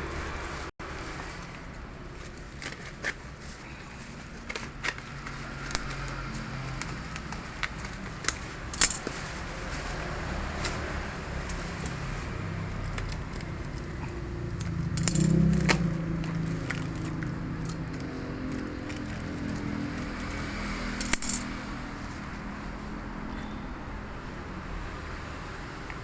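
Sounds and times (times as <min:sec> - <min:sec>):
packaging crackling and rustling: 0:01.0 - 0:20.5.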